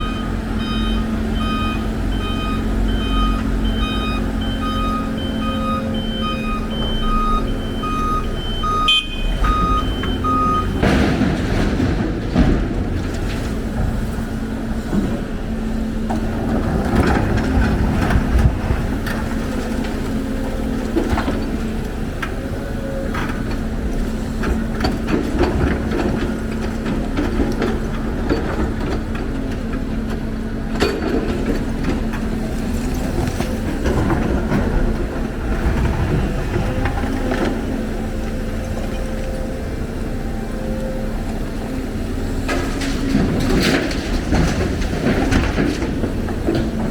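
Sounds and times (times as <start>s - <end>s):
diesel machinery humming: 0.0s - 46.9s.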